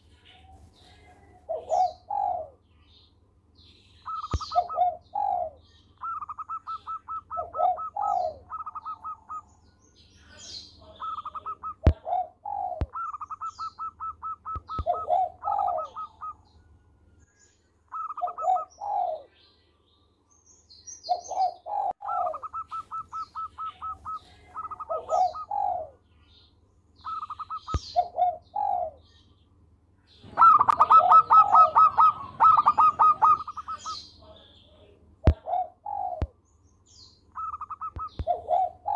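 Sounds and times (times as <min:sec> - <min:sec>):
dove cooing: 0:00.3 - 0:02.6, 0:04.0 - 0:09.6, 0:10.4 - 0:16.5, 0:17.9 - 0:19.3, 0:21.1 - 0:26.0, 0:27.0 - 0:29.0, 0:30.2 - 0:34.1, 0:35.3 - 0:36.4, 0:37.3 - 0:38.9.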